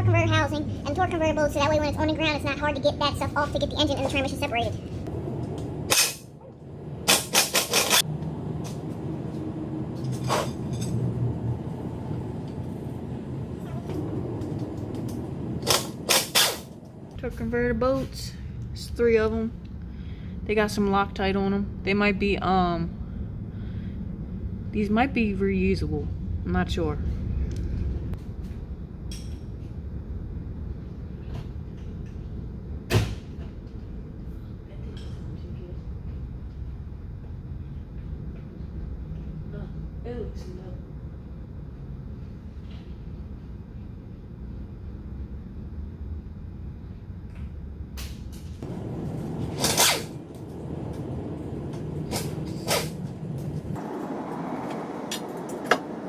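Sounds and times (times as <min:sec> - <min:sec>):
low rumble: 0:00.0 - 0:07.2, 0:08.0 - 0:56.0
sharp metallic clacks of tools: 0:05.9 - 0:06.3, 0:07.1 - 0:08.0.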